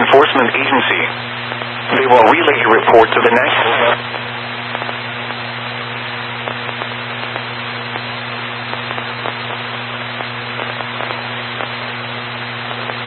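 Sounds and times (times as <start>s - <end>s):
radio static hiss and crackles: 0.0s - 13.0s.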